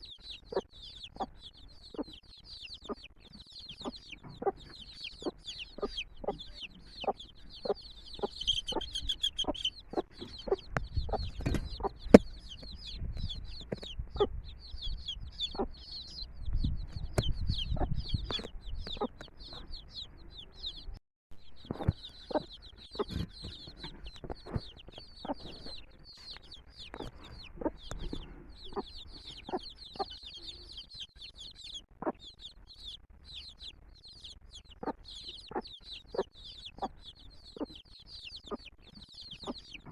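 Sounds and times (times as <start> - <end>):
chicks peeping: 0.0 - 39.9
hen clucking: 0.0 - 39.9.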